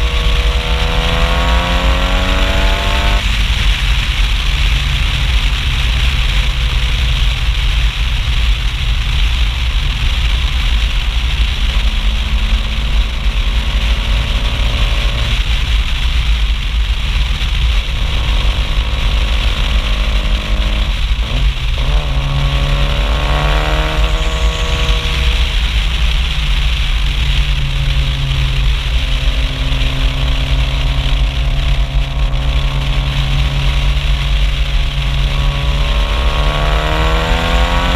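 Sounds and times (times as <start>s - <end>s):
car exhaust accelerating: 0.0s - 37.9s
wind rumble on microphone: 0.0s - 37.9s.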